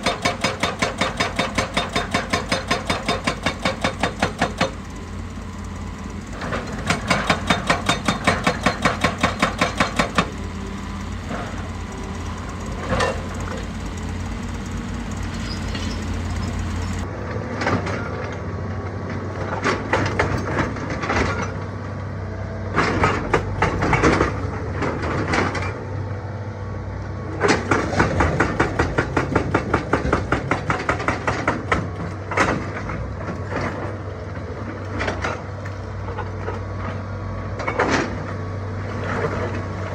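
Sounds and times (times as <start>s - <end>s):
hydraulic rock breaker hammering: 0.0s - 17.9s, 27.4s - 33.9s
diesel engine running: 0.0s - 39.9s.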